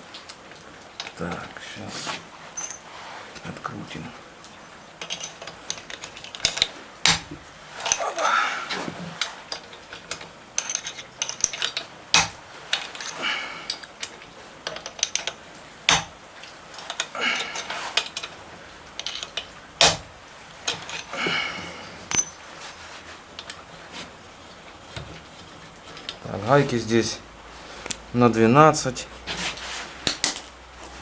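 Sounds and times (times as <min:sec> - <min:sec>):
metal hand tools clinking: 0:02.6 - 0:02.9, 0:04.6 - 0:07.2, 0:07.8 - 0:08.4, 0:09.2 - 0:16.0, 0:16.8 - 0:18.4, 0:19.0 - 0:20.0, 0:20.6 - 0:22.6.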